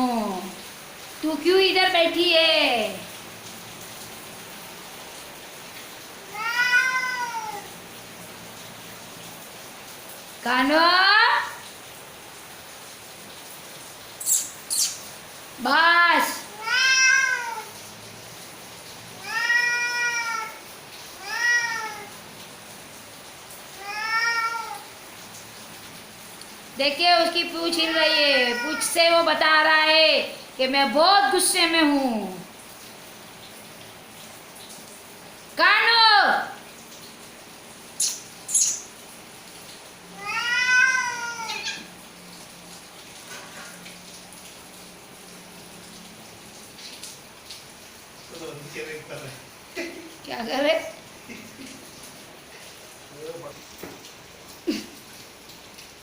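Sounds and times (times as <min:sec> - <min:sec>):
angry cat meowing: 0:06.2 - 0:07.7, 0:16.5 - 0:17.8, 0:19.2 - 0:20.6, 0:21.2 - 0:22.1, 0:23.8 - 0:24.9, 0:27.8 - 0:29.1, 0:40.2 - 0:41.9
cat hissing: 0:28.0 - 0:28.9, 0:40.2 - 0:41.9.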